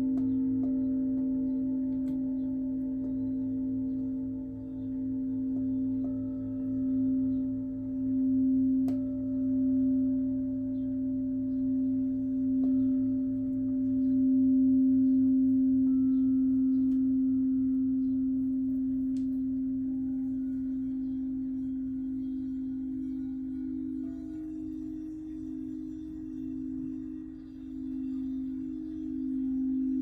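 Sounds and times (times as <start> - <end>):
singing bowl ringing: 0.0 - 30.0
light taps on singing bowl: 0.1 - 4.1.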